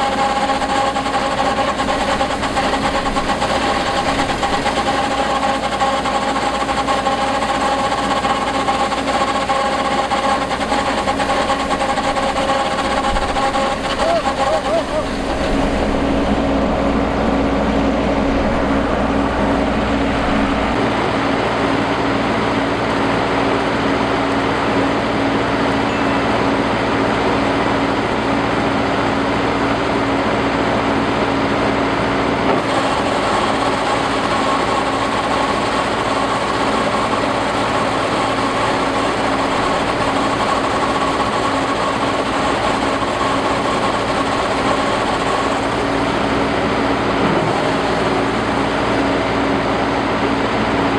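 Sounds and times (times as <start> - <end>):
high steady whine: 0.0 - 22.9
combine harvester droning: 0.0 - 50.9.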